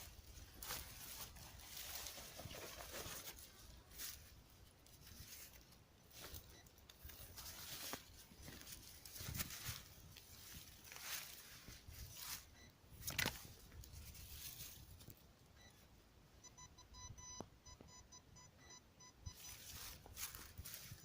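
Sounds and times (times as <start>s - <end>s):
rustling and crunching forest litter: 0.0s - 15.2s, 19.4s - 21.0s.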